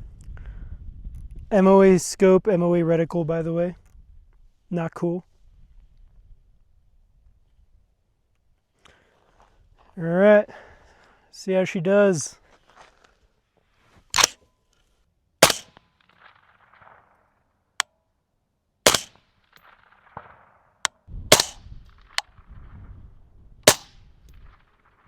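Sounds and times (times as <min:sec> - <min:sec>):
suppressed rifle shots: 0:14.1 - 0:14.4, 0:15.4 - 0:17.4, 0:18.8 - 0:22.8, 0:23.6 - 0:25.0.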